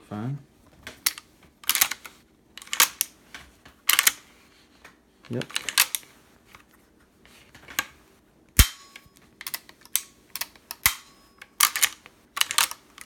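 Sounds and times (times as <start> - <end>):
rifle action clicking: 1.0 - 3.1, 3.9 - 4.2, 5.4 - 6.1, 8.6 - 13.0
sharp metallic snaps: 8.6 - 13.0.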